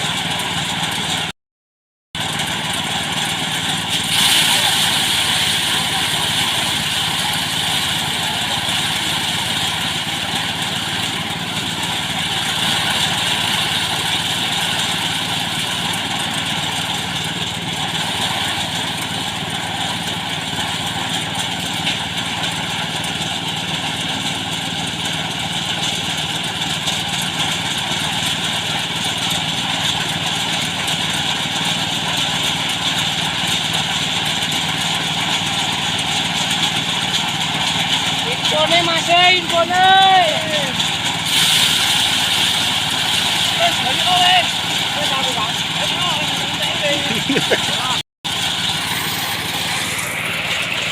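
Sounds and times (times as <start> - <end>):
threshing machine running: 0.0 - 1.3, 2.2 - 50.9.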